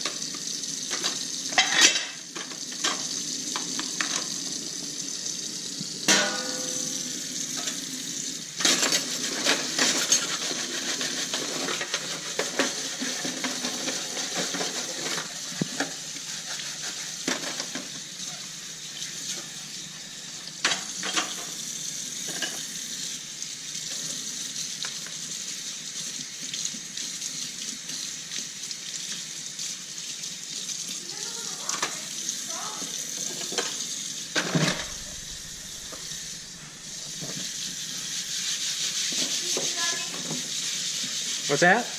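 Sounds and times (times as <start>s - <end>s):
running water: 0.0s - 41.9s
plates and cutlery clinking: 0.9s - 4.3s, 6.1s - 7.8s, 8.6s - 15.9s, 34.4s - 40.5s.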